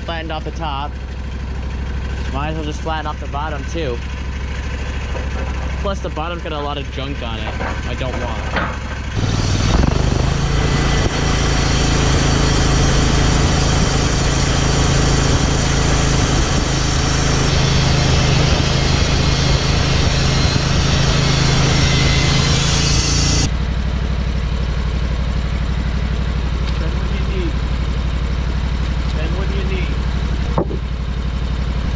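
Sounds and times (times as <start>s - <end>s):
sawmill engine running: 0.0s - 31.9s
saw blade cutting wood: 9.2s - 23.5s.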